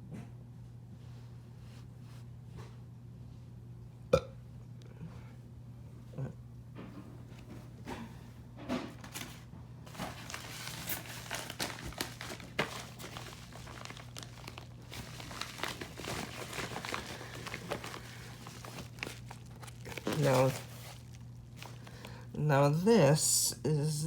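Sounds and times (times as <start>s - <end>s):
steady low hum: 0.0s - 24.0s
packaging crinkling and rustling: 8.8s - 22.3s.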